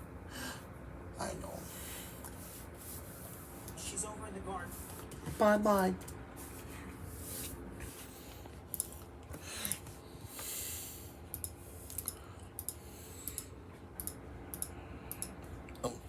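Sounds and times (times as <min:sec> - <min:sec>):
sharp clicks: 0:08.7 - 0:09.1, 0:11.3 - 0:15.4.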